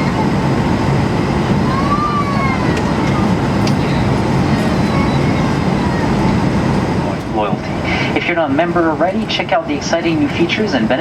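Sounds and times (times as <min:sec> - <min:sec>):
airliner cabin rumble and hiss: 0:00.0 - 0:11.0
faint indistinct voices: 0:01.4 - 0:07.2.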